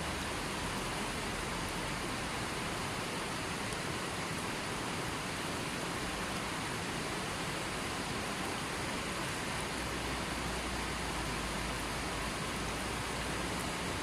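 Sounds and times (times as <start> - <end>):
river water rushing: 0.0 - 14.0.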